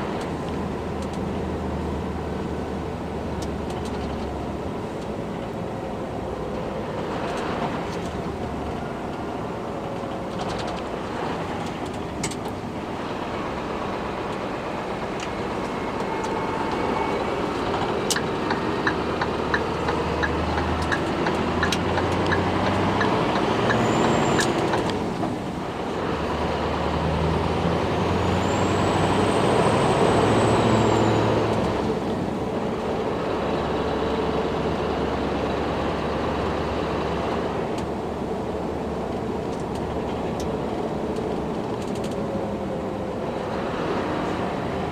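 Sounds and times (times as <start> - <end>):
diesel truck engine under load: 0.0 - 44.9
high whistle: 15.4 - 18.4
regular ticking: 15.9 - 24.9.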